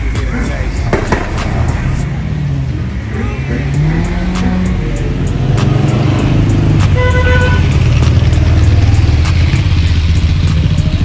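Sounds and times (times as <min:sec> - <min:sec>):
car engine running: 0:00.0 - 0:11.0.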